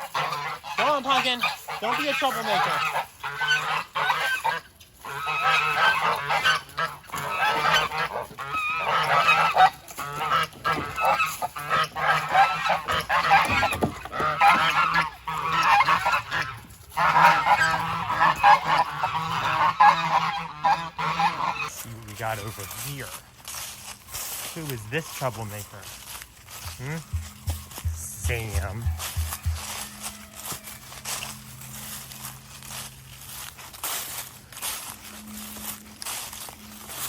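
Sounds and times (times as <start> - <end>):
geese honking: 0.0 - 37.0.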